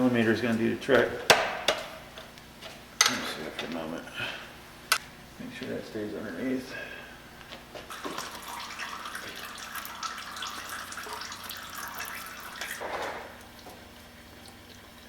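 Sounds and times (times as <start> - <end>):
oil pouring into a pan: 7.9 - 15.0.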